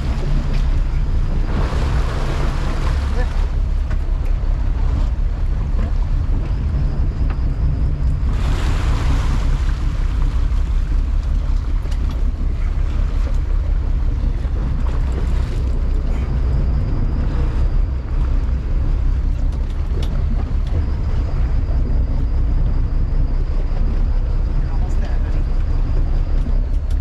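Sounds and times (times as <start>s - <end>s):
sea rushing past: 0.0s - 5.6s, 8.2s - 11.8s
boat engine drone: 0.0s - 27.0s
wind buffeting microphone: 0.0s - 27.0s.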